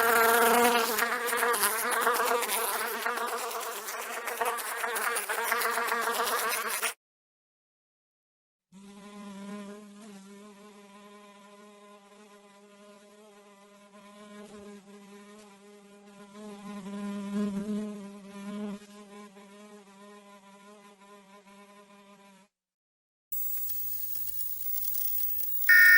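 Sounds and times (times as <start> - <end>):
house fly buzzing: 0.0 - 7.0, 8.8 - 22.5.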